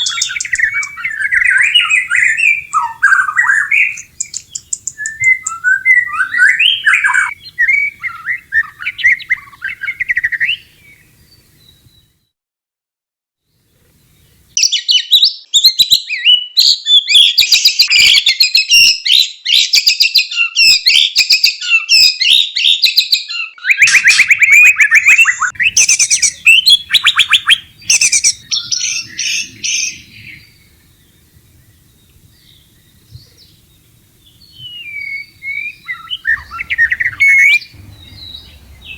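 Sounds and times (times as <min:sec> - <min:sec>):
bird rattling calls: 0:00.0 - 0:11.6, 0:23.8 - 0:38.9
bird whistled song: 0:00.0 - 0:12.2, 0:14.0 - 0:38.9.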